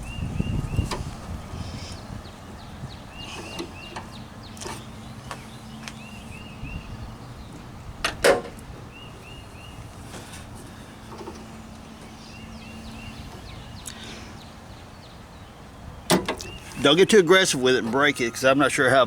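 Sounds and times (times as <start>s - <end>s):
bird chirping: 0.0s - 7.8s, 8.6s - 18.7s
sharp metal latch clicks: 8.0s - 8.6s, 16.1s - 16.6s.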